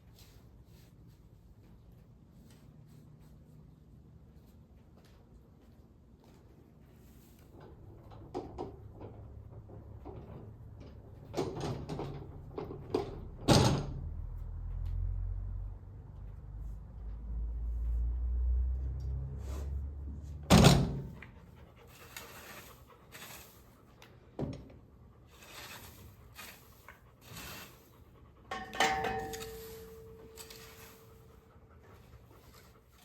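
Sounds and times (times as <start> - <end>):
metallic clang ringing: 28.5 - 30.6.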